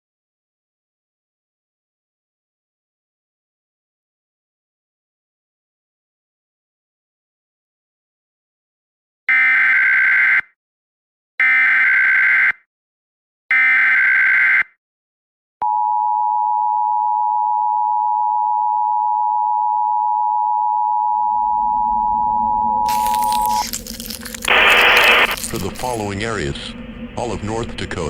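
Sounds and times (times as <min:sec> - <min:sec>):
warbling data bursts: 0:22.9 - 0:27.3.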